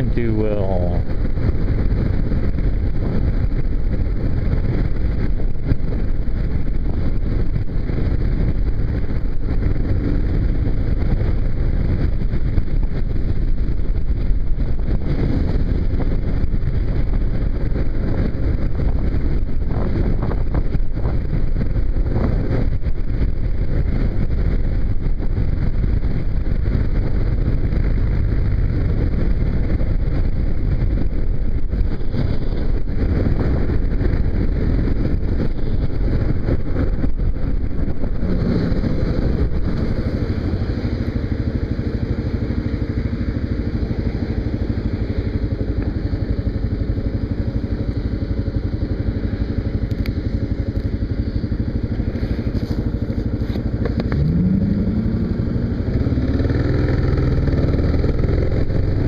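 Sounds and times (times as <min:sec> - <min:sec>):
motorcycle engine running: 0:00.0 - 0:59.0
wind rush on microphone: 0:00.0 - 0:59.0.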